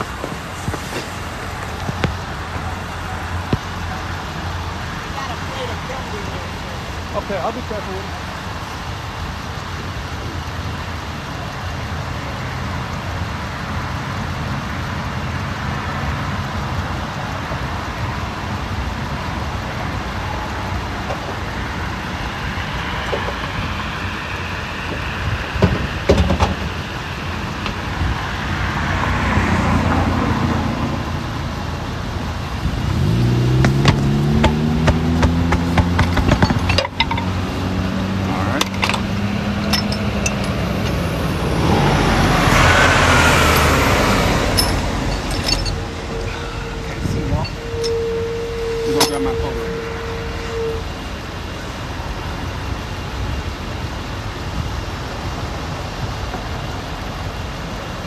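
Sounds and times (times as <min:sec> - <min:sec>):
highway traffic roar: 0:00.0 - 0:58.0
vehicle engine rising in pitch: 0:28.2 - 0:53.1
knocks and clicks: 0:33.6 - 0:37.4.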